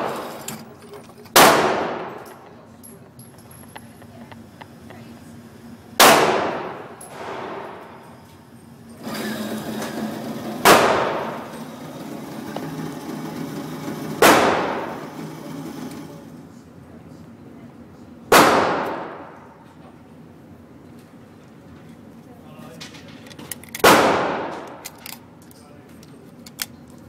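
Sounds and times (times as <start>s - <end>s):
pistol shots with ringing echo: 1.3s - 2.4s, 6.0s - 8.0s, 10.6s - 11.4s, 14.2s - 14.9s, 18.3s - 19.5s, 23.8s - 24.8s.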